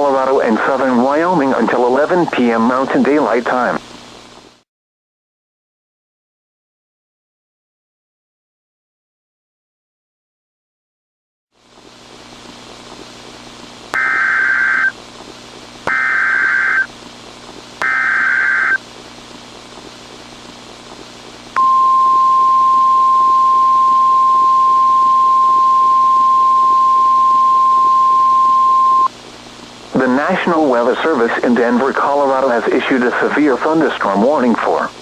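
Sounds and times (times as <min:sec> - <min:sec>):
faint hiss and hum: 0:00.0 - 0:04.6, 0:11.6 - 0:35.0
steady alert tone: 0:14.0 - 0:14.9, 0:15.9 - 0:16.9, 0:17.8 - 0:18.8
warbling data bursts: 0:14.0 - 0:14.9, 0:15.9 - 0:16.9, 0:17.8 - 0:18.8.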